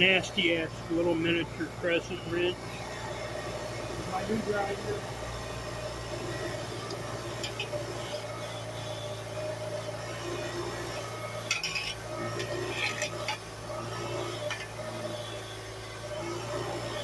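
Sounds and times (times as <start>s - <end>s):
bench grinder motor humming: 0.0s - 17.0s
wrench scraping grinding wheel: 7.3s - 9.0s, 9.6s - 15.5s.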